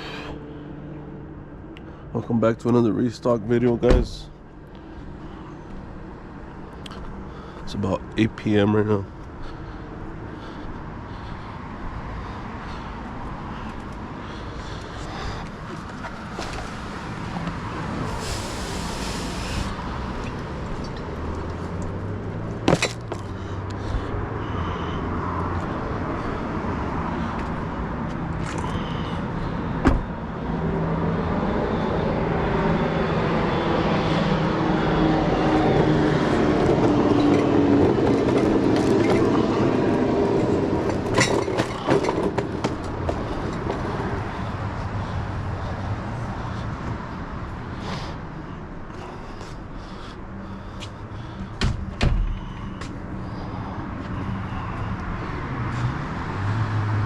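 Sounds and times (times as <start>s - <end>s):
car engine and road noise: 0.0s - 57.0s.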